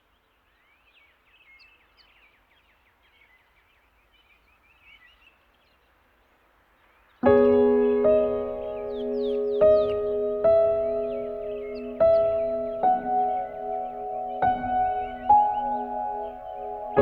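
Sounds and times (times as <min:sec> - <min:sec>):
faint birdsong chirping: 0:00.0 - 0:17.0
piano chords music: 0:07.2 - 0:17.0.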